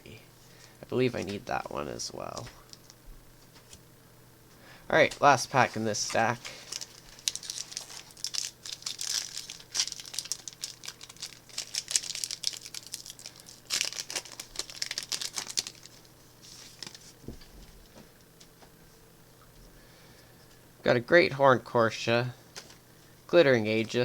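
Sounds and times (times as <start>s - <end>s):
plastic wrapper tearing and crinkling: 6.0s - 17.2s.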